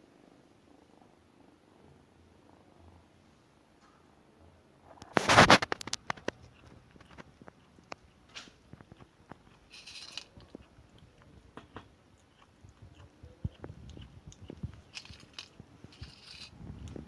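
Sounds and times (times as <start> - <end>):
kitten chewing and crunching: 4.9 - 17.0.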